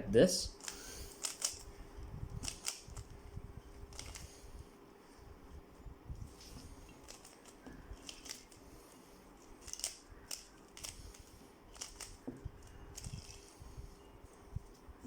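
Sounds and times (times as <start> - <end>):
puzzle cube turning clicks: 0.6 - 1.7, 2.4 - 3.2, 3.9 - 4.3, 7.0 - 8.6, 9.4 - 13.5.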